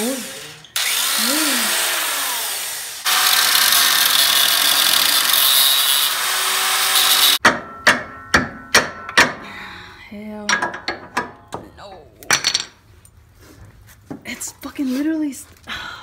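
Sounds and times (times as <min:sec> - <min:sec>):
angle grinder cutting steel: 0:00.0 - 0:07.4.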